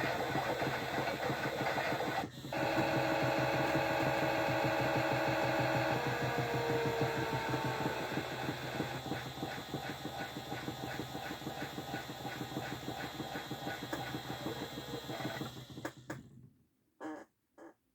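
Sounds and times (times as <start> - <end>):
toy motor whine: 0.0 - 10.6.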